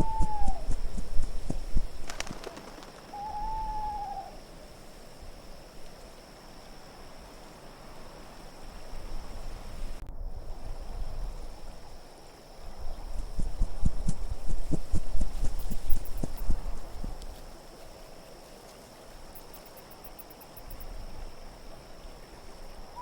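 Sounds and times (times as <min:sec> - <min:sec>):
owl hoot: 0:00.0 - 0:01.2, 0:02.1 - 0:04.4
steady wind with low rumble: 0:00.0 - 0:23.0.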